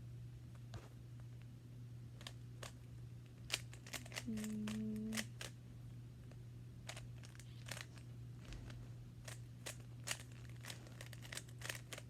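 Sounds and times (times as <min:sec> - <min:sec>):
puzzle cube plastic clicks: 0:03.4 - 0:05.6, 0:06.9 - 0:08.0, 0:09.3 - 0:12.0.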